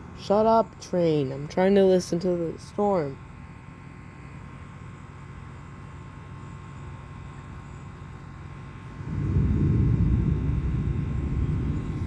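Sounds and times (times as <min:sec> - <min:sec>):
faint steady hum: 0:00.0 - 0:12.0
distant train rumble: 0:08.6 - 0:12.0.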